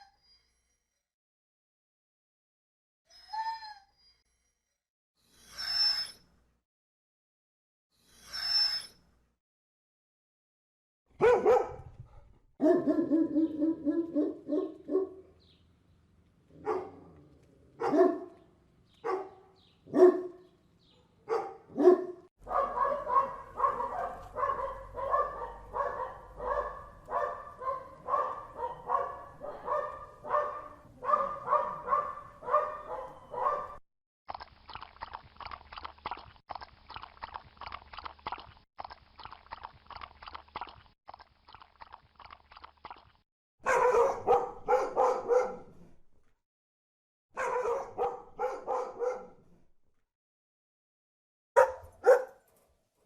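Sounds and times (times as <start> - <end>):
dogs barking: 11.2 - 11.9, 12.6 - 15.4, 16.6 - 17.2, 17.8 - 18.4, 19.0 - 33.8, 43.6 - 45.7, 47.4 - 49.4, 51.6 - 52.5.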